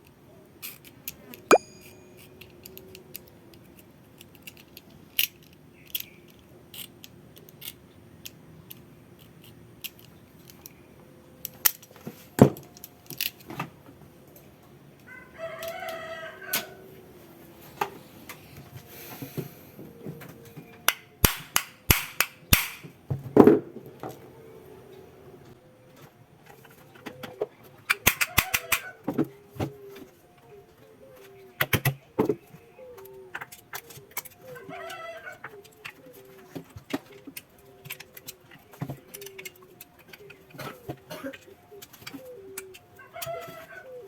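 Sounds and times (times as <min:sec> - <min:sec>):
tools and parts clicking: 0:00.6 - 0:10.8, 0:33.0 - 0:34.6, 0:36.6 - 0:43.4
rooster crowing: 0:15.1 - 0:17.0, 0:34.5 - 0:35.5, 0:43.0 - 0:44.0.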